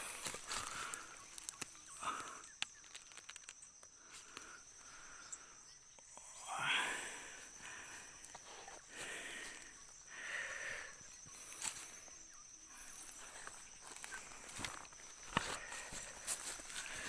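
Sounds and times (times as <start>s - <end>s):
high-pitched insect drone: 0.0s - 17.0s
small clicks: 2.4s - 4.5s.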